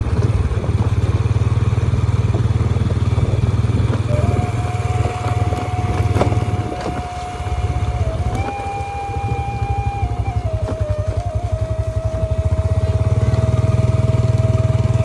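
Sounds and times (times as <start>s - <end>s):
small motorcycle engine chugging: 0.0s - 15.0s
steady high tone: 4.1s - 14.0s.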